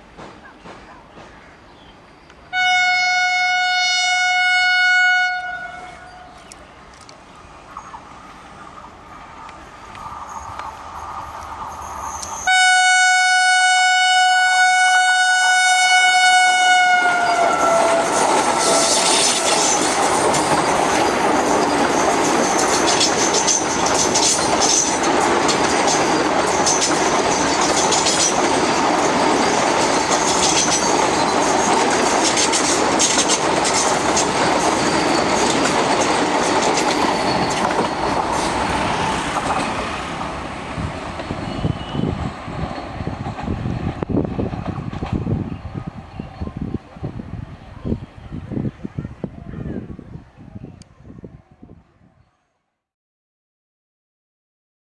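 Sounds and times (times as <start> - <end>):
train rail clatter: 0.0 - 1.4, 16.7 - 46.7
train horn: 2.5 - 6.4, 12.4 - 20.0.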